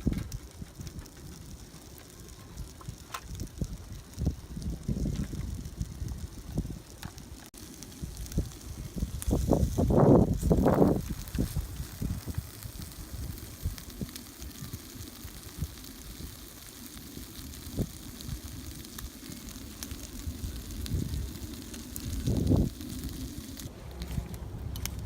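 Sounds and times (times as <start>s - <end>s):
bacon sizzling on a grill: 0.0s - 25.0s
burning wood crackling: 0.0s - 25.0s
low rumble: 19.7s - 25.0s.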